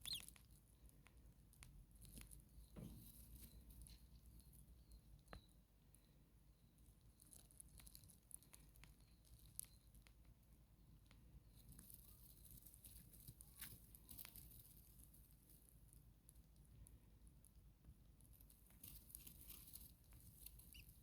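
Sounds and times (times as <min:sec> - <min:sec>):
nestlings scratching and rustling: 0:00.0 - 0:00.6, 0:07.0 - 0:10.1, 0:11.5 - 0:16.0, 0:18.2 - 0:21.0.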